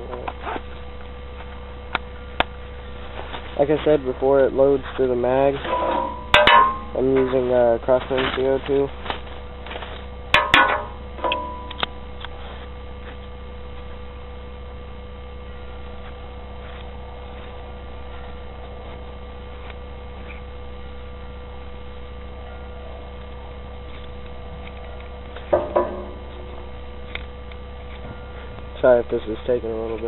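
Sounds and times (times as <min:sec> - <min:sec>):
electrical mains hum: 0:00.0 - 0:30.0.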